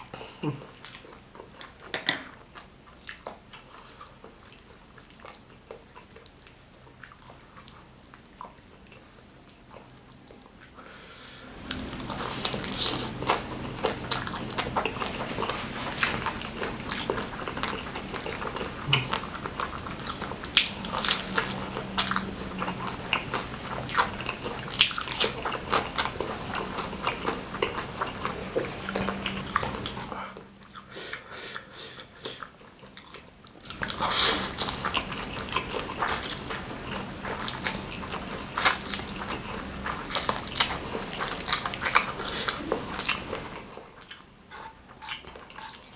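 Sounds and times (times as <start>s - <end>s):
close-miked chewing and biting: 11.5s - 45.9s.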